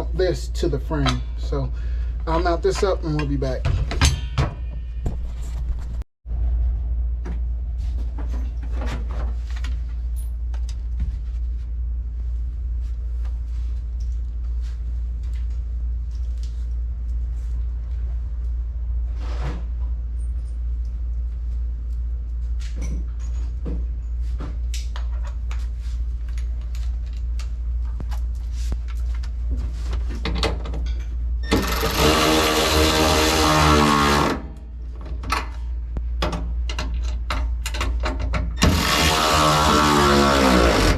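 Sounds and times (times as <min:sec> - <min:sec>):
steady low hum: 0:00.0 - 0:40.9
power tool motor running: 0:31.5 - 0:34.4, 0:38.6 - 0:40.9.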